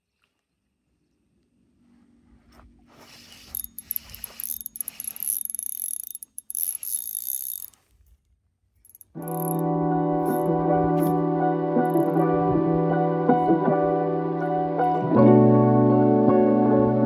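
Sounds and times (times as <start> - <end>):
fishing reel clicking and whirring: 3.0 - 7.9, 8.8 - 9.6, 10.2 - 11.2, 11.8 - 12.2.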